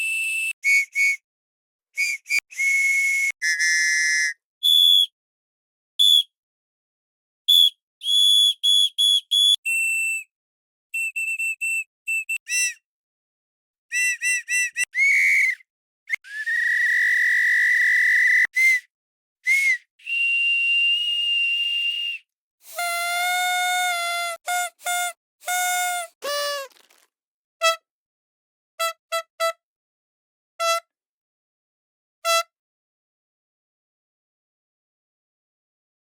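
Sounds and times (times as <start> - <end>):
whistles blown at several pitches: 0.0 - 1.2, 2.0 - 5.1, 6.0 - 6.3, 7.5 - 10.3, 10.9 - 12.8, 13.9 - 26.7.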